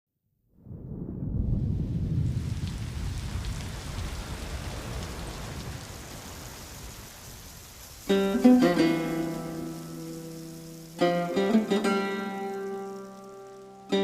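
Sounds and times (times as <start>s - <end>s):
low rumble: 0.5s - 5.6s
steady rainfall hiss: 1.8s - 14.0s
plucked acoustic guitar: 8.1s - 14.0s.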